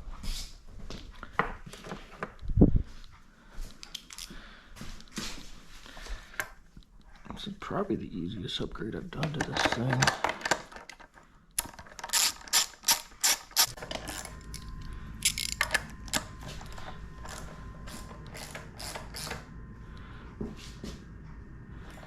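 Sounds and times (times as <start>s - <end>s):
ratchet wrench clicking: 12.1s - 13.8s.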